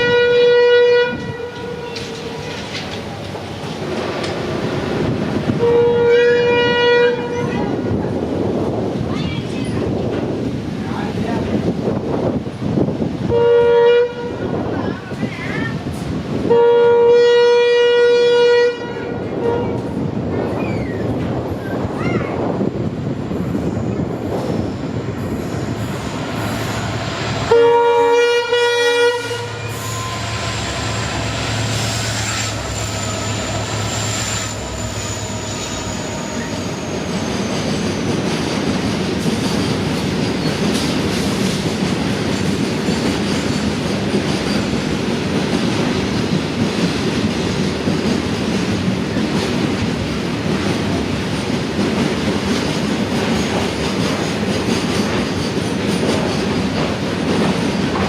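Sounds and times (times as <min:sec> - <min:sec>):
locomotive horn honk: 0:00.0 - 0:02.4, 0:05.6 - 0:07.6, 0:13.3 - 0:14.4, 0:16.5 - 0:19.8, 0:27.5 - 0:30.5
train clattering on rails: 0:00.0 - 0:16.6, 0:17.5 - 0:58.0
high wheel squeal: 0:29.5 - 0:38.1.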